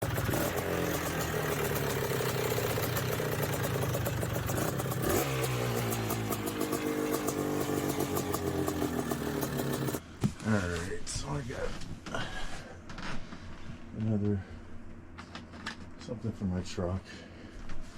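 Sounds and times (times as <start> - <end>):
engine running: 0.0 - 10.0.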